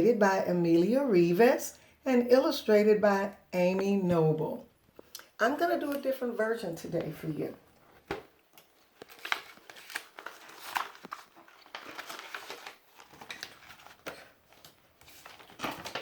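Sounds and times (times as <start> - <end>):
paper rustling and crinkling: 7.8 - 16.0.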